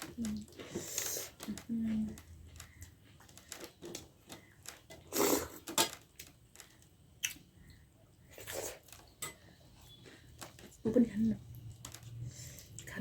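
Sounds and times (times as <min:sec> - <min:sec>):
wet mouth smacks and chewing: 0:07.2 - 0:07.4.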